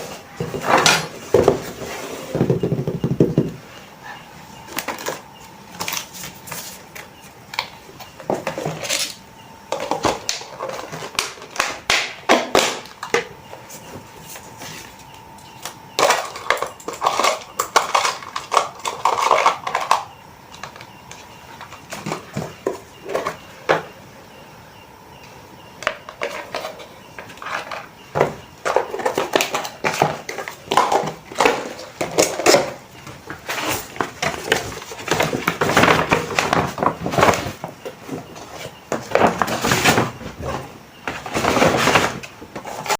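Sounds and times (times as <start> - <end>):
faint high hum: 0.0 - 42.9
packaging clicks and crinkles: 4.6 - 23.4, 28.6 - 42.9.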